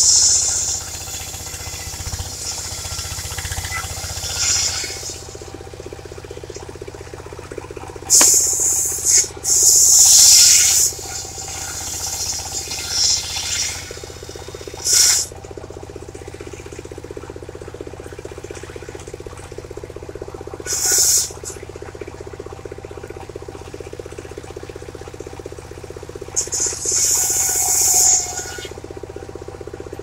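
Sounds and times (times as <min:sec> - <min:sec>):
saw blade cutting wood: 0:00.0 - 0:05.3, 0:08.1 - 0:15.3, 0:20.7 - 0:21.5, 0:26.4 - 0:28.8
sawmill engine putter: 0:00.0 - 0:30.0.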